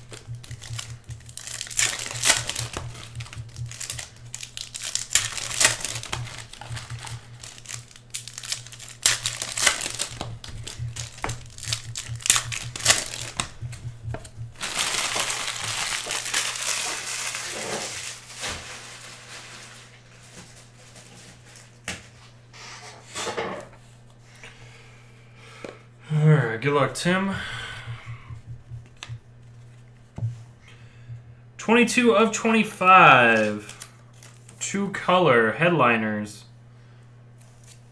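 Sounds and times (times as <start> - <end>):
low hum: 0.0 - 17.3, 26.6 - 31.6
card pack wrappers crinkling and tearing: 0.0 - 21.8, 33.1 - 34.6.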